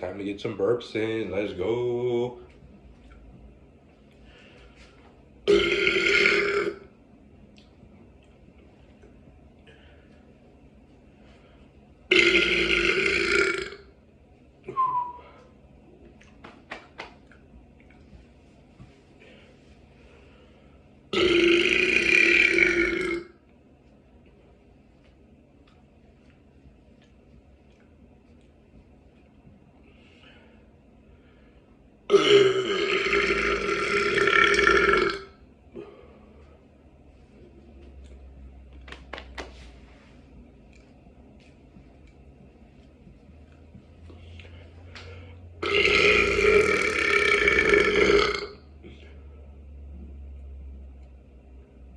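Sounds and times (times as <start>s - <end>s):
person burping: 5.5s - 6.9s, 12.1s - 13.9s, 21.1s - 23.3s, 32.1s - 35.4s, 45.6s - 48.6s.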